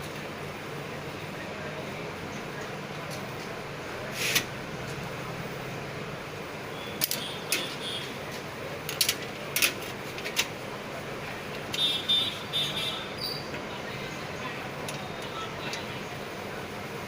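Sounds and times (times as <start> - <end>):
steady background hum: 0.0 - 17.0.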